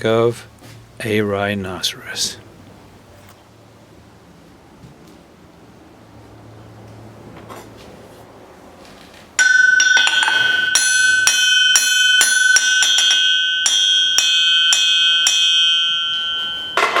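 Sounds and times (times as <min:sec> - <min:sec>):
bell-like anvil ring: 0:09.4 - 0:17.0
hammer striking anvil: 0:09.4 - 0:17.0.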